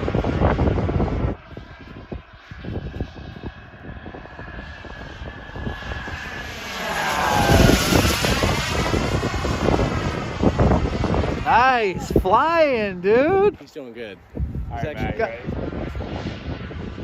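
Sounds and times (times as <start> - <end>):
model jet turbine whining: 0.0 - 13.6.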